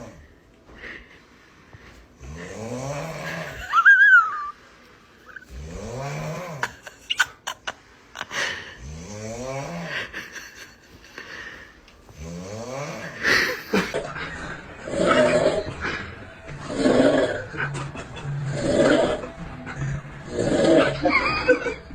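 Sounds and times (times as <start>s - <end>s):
snoring: 0.0s - 0.2s, 2.2s - 3.7s, 5.4s - 6.8s, 8.4s - 10.2s, 12.1s - 21.8s.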